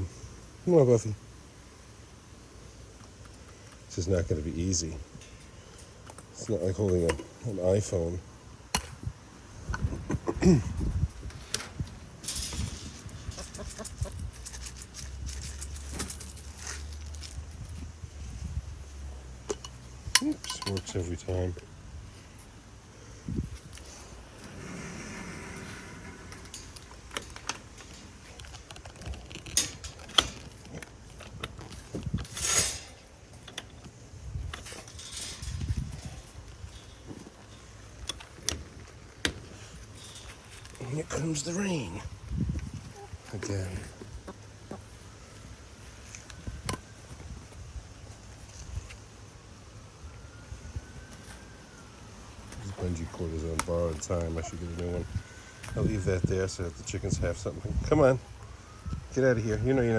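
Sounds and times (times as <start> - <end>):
hen clucking: 13.3 - 14.3, 44.0 - 45.0.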